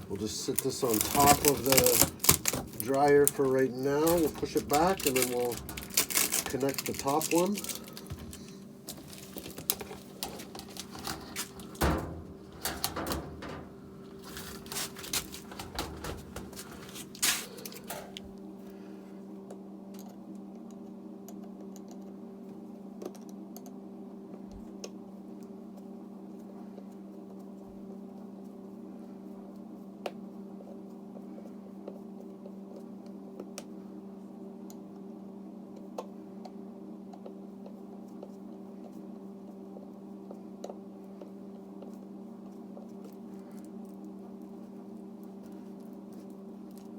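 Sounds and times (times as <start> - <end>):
knocks and clatter of vent duct: 0.0 - 18.3
steady low hum: 0.0 - 46.9.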